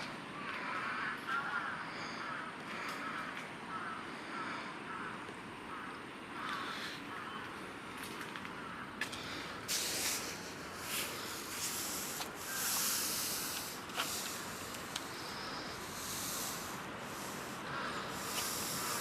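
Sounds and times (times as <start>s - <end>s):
rain hiss: 9.2s - 19.0s.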